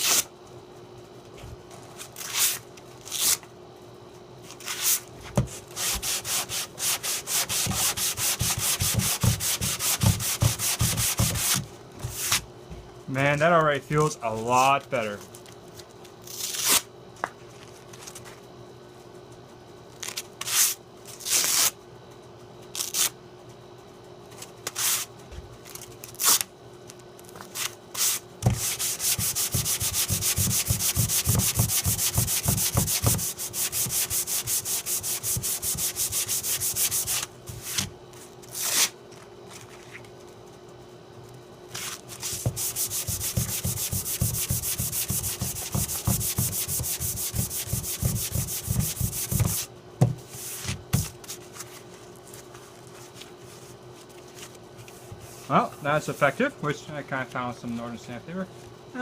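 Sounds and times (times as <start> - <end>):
sandpaper rubbing on wood: 5.8 - 11.6, 28.0 - 37.2, 42.2 - 49.7.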